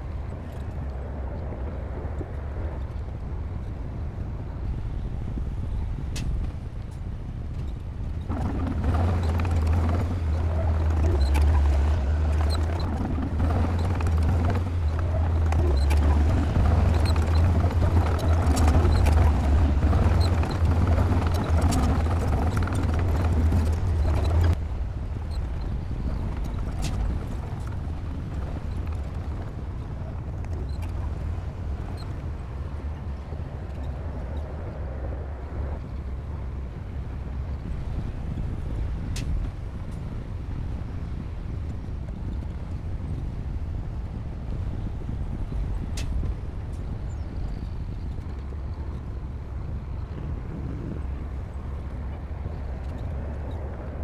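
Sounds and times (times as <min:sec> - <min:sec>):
bulldozer diesel engine running: 0:08.3 - 0:34.3.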